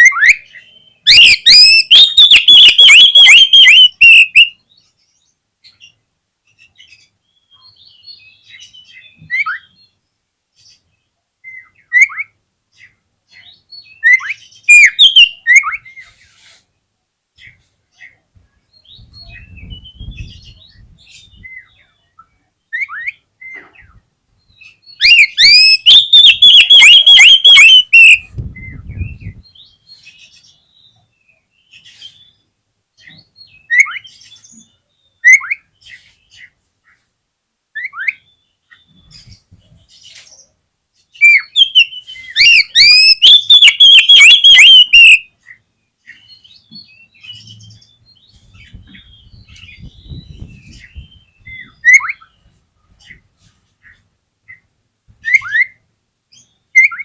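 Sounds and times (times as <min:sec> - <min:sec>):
bird singing rapid high notes: 0:00.0 - 0:04.6, 0:14.0 - 0:15.8, 0:25.0 - 0:29.4, 0:41.2 - 0:45.2
soft bird whistles and chirps: 0:00.0 - 0:04.6, 0:11.4 - 0:16.6, 0:17.4 - 0:31.0, 0:41.1 - 0:45.3.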